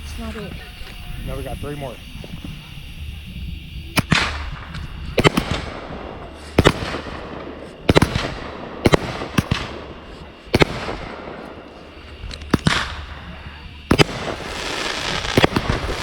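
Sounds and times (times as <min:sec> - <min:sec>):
fireworks bangs with crackling hiss: 0:00.0 - 0:16.0.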